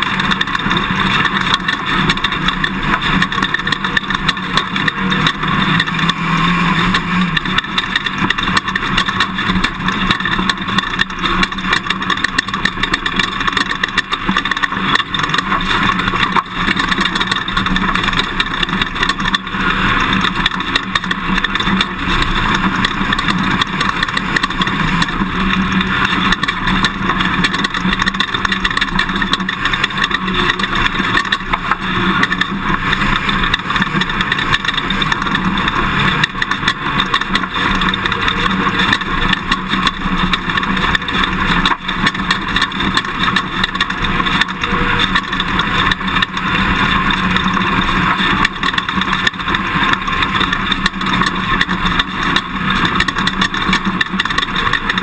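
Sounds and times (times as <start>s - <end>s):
pickup engine driving: 0.0s - 55.0s
road and wind noise: 0.0s - 55.0s.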